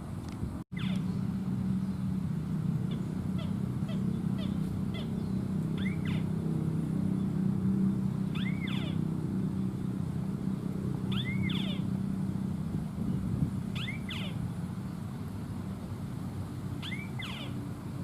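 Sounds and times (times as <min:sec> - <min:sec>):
steady low drone: 0:00.0 - 0:18.0
bird calling: 0:00.8 - 0:02.1, 0:02.8 - 0:06.4, 0:08.2 - 0:09.9, 0:11.0 - 0:12.1, 0:13.7 - 0:14.5, 0:16.8 - 0:17.8.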